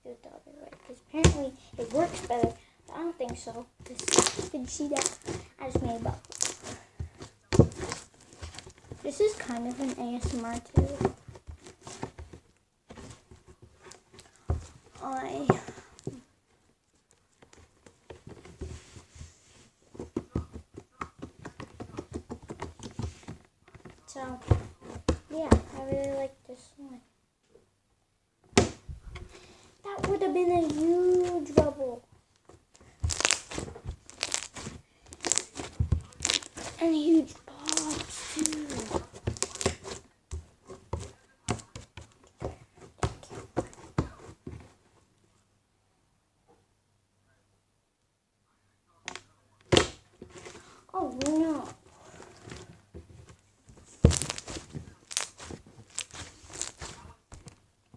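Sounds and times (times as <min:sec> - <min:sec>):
slime squishing and popping: 0:03.8 - 0:06.8, 0:32.8 - 0:36.8, 0:37.5 - 0:40.0, 0:54.0 - 0:57.0.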